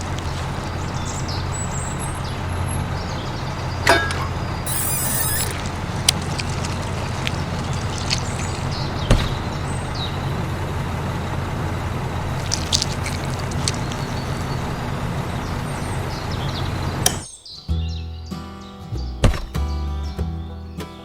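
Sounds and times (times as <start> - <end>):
small electric motor humming: 4.7 - 8.7.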